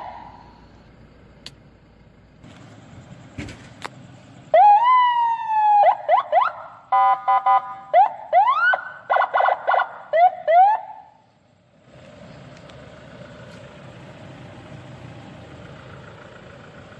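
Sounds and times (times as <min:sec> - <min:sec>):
electronic siren whoops: 0:00.0 - 0:00.7, 0:04.5 - 0:11.2
car engine idling: 0:00.0 - 0:16.9.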